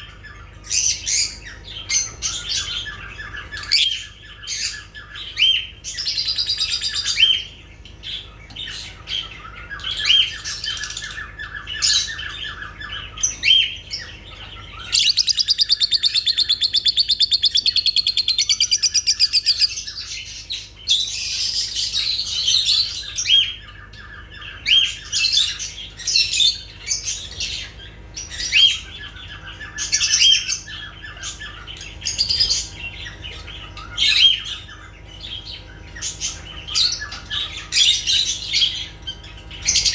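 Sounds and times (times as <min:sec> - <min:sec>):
lovebirds chirping and squawking: 0:00.0 - 0:39.9
loud pulsing bird trill: 0:14.8 - 0:22.4.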